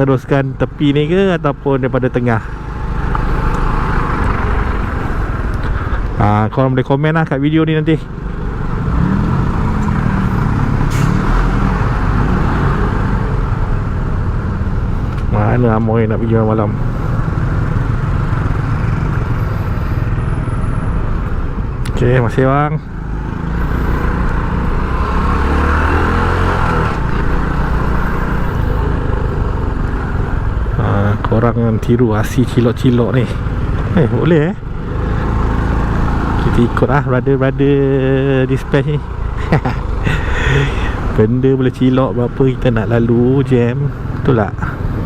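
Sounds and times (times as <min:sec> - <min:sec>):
road and wind rumble: 0:00.0 - 0:45.0
motorcycle engine revving: 0:08.1 - 0:15.6, 0:22.8 - 0:45.0.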